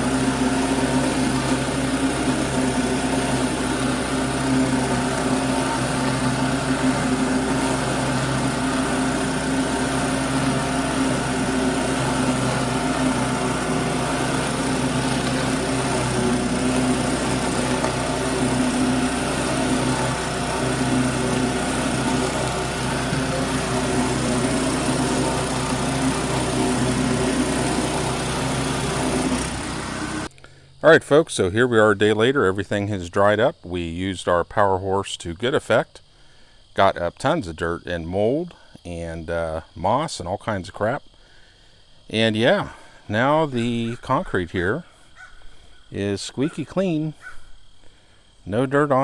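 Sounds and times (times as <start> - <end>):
small gas engine running: 0.0 - 30.3.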